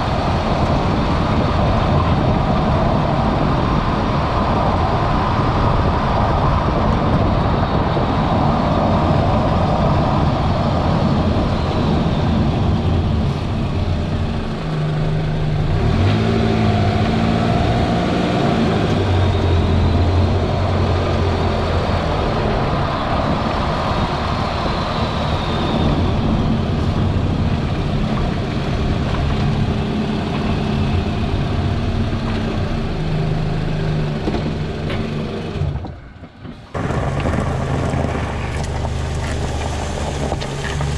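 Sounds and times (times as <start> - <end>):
road noise: 0.0 - 40.9
car engine running: 36.6 - 40.9.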